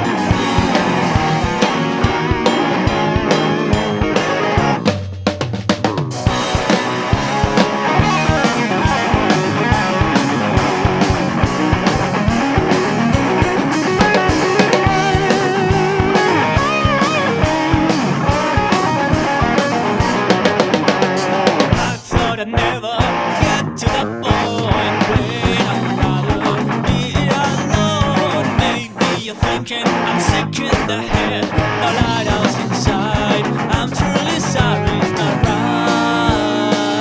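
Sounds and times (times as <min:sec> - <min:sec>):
rock band playing: 0:00.0 - 0:37.0
wavering lead guitar line: 0:00.0 - 0:37.0.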